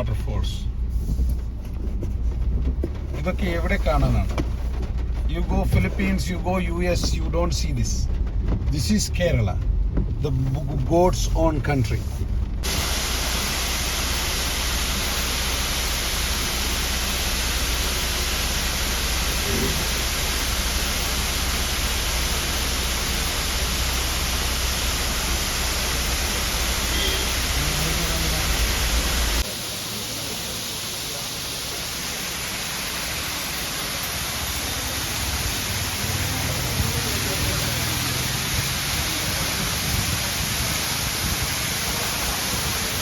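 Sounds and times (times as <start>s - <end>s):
waterfall rushing: 12.6s - 43.0s.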